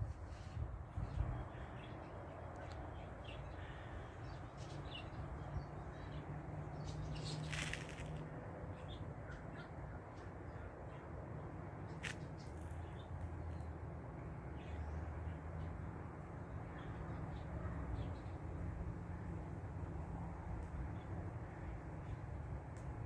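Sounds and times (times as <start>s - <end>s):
outdoor background noise: 0.0s - 23.0s
bird calls: 6.8s - 8.2s.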